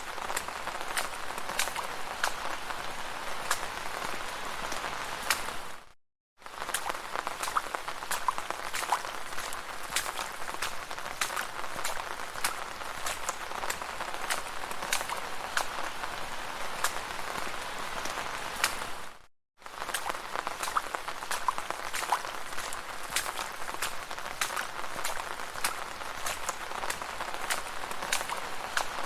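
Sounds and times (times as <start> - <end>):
rain drops ticking on hard surface: 0.0 - 29.0.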